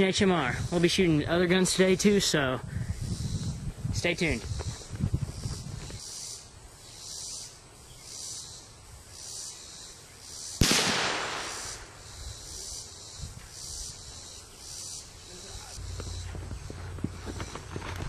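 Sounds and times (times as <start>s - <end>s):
insects pulsing: 0.0s - 18.0s
rifle shot with echo: 10.6s - 12.0s.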